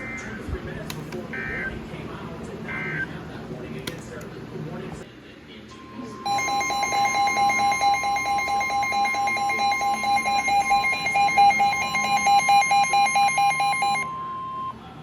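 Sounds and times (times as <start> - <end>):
steady alert tone: 6.2 - 14.7
fast pulsing alarm beep: 6.3 - 14.8.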